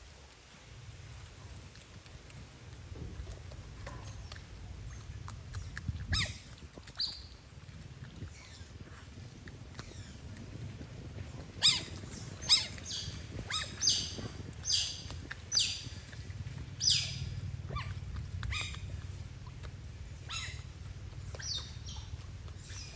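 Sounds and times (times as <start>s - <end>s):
otter chirping: 11.6s - 22.9s.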